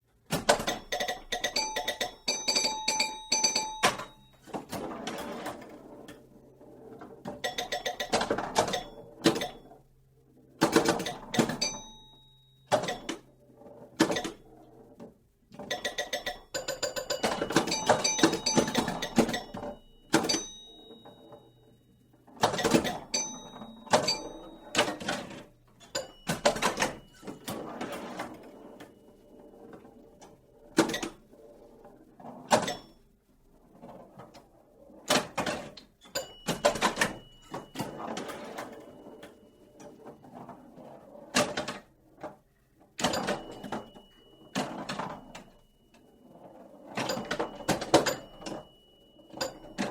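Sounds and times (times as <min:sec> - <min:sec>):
pinball flipper clacks: 0:00.3 - 0:06.2, 0:07.0 - 0:09.6, 0:10.6 - 0:13.3, 0:13.9 - 0:14.5, 0:15.5 - 0:21.4, 0:22.4 - 0:28.9, 0:30.2 - 0:31.2, 0:32.4 - 0:33.0, 0:35.0 - 0:40.6, 0:43.0 - 0:45.5, 0:46.9 - 0:49.9
pinball bell tones: 0:00.3 - 0:06.3, 0:07.3 - 0:09.8, 0:10.6 - 0:13.4, 0:15.6 - 0:30.0, 0:32.5 - 0:33.1, 0:35.1 - 0:40.5, 0:43.0 - 0:49.9.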